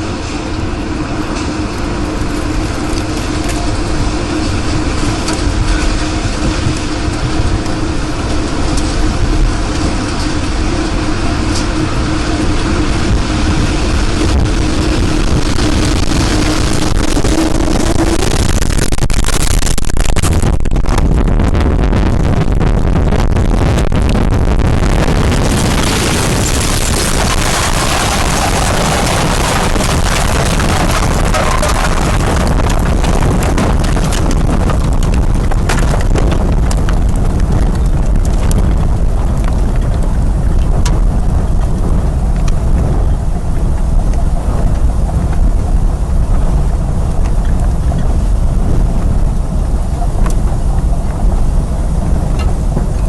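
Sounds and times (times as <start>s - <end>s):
loud storm wind: 0.0s - 53.0s.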